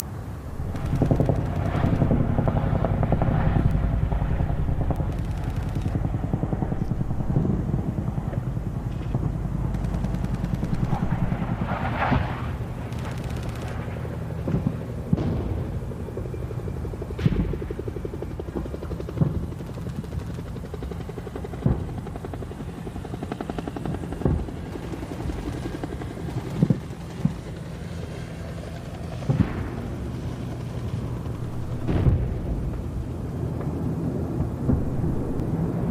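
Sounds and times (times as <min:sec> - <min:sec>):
gunshots and blasts: 0:00.0 - 0:07.9, 0:09.0 - 0:16.1, 0:31.3 - 0:33.1, 0:34.4 - 0:35.9
low mechanical rumble: 0:00.0 - 0:18.6, 0:28.5 - 0:35.9.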